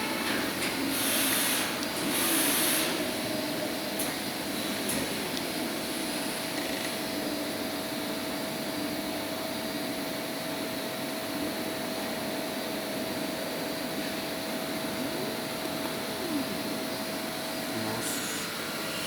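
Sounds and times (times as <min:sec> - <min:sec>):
cnc machine motor whirring: 0:15.0 - 0:19.0.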